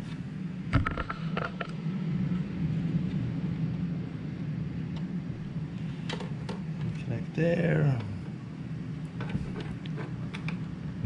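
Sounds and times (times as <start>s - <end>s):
steady low hum: 0.0s - 11.0s
small clicks and taps: 9.2s - 10.6s.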